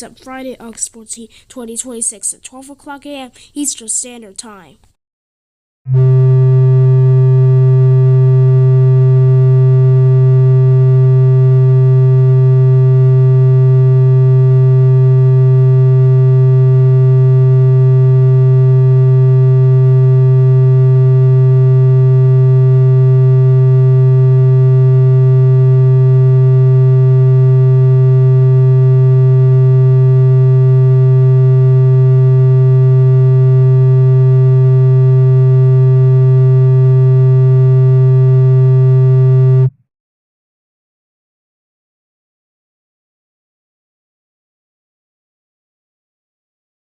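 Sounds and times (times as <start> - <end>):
low electronic buzz tone: 5.9 - 39.8.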